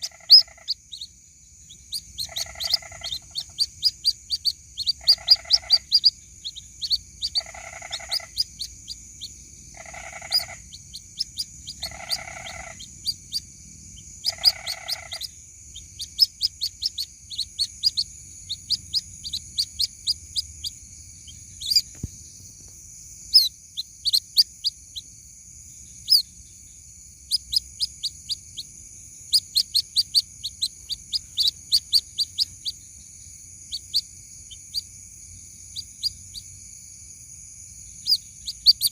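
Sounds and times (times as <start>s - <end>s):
chicks peeping chirps: 0.0s - 1.1s, 1.7s - 22.1s, 23.3s - 25.1s, 27.3s - 32.8s, 33.7s - 34.9s.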